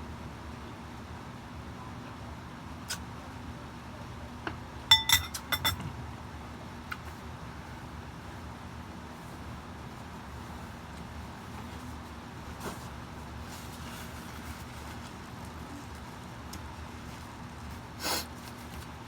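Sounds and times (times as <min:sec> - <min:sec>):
tableware clinking: 0:04.9 - 0:05.8.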